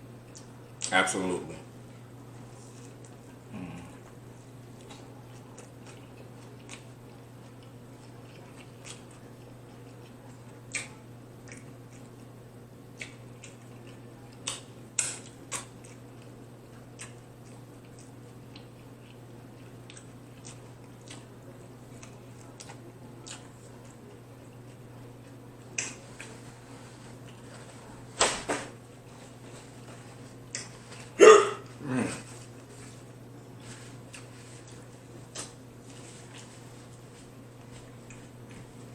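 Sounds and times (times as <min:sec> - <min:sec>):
person chewing food: 0:02.4 - 0:27.8, 0:29.1 - 0:38.9.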